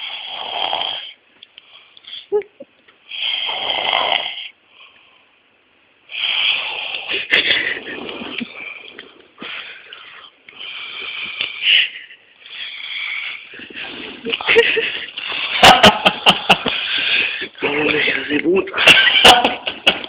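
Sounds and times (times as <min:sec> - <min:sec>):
man snoring: 0:00.0 - 0:01.2, 0:03.1 - 0:04.5.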